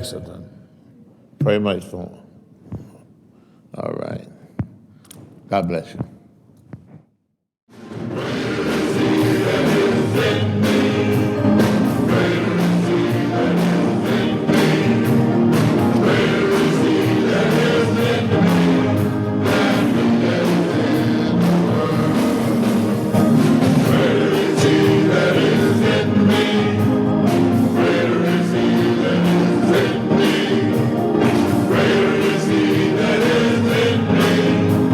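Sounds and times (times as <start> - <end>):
men's chorus singing gospel: 8.0 - 34.9.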